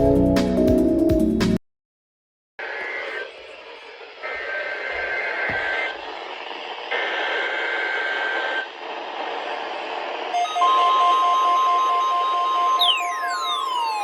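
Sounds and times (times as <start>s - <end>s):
radio static: 2.6s - 10.4s
digital data tones: 10.4s - 14.0s
rapid pulsing beeps: 10.4s - 14.0s
warning alarm tone: 10.4s - 14.0s.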